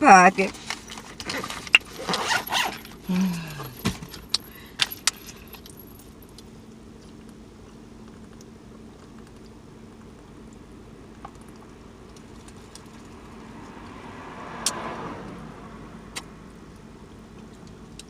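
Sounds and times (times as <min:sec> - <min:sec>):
faint steady hum: 0:00.0 - 0:13.9
items rattling and crinkling: 0:00.3 - 0:06.2.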